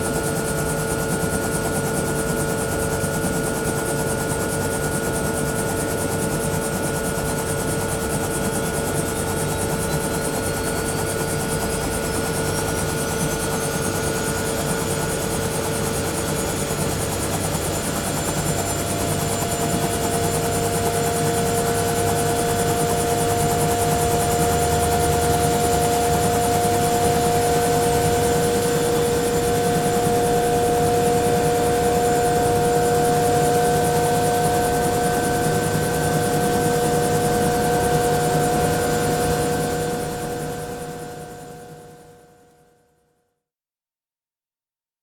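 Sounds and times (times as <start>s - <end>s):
helicopter rotor rumble: 0.0s - 42.4s
helicopter turbine whine: 0.0s - 42.5s.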